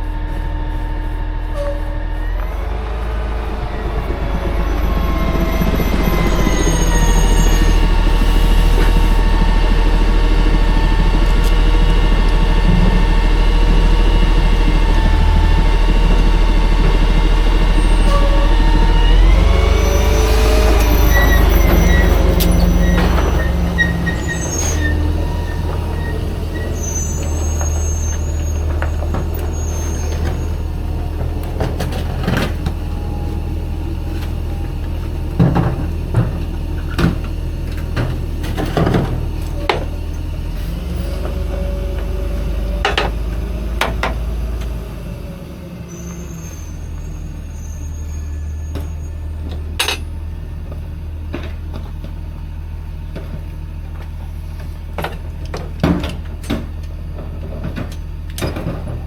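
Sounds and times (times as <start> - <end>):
garbage truck engine rumble: 0.0 - 59.0
brief high squeals: 1.5 - 8.0, 17.8 - 28.7, 29.4 - 30.6, 45.9 - 49.3.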